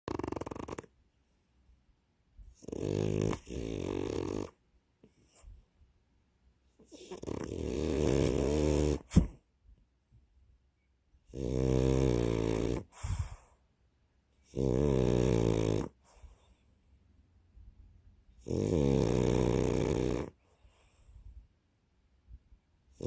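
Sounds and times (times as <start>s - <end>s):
dog snoring: 0.1s - 0.9s, 2.4s - 5.4s, 6.8s - 9.4s, 11.2s - 13.6s, 14.4s - 16.6s, 18.4s - 21.2s.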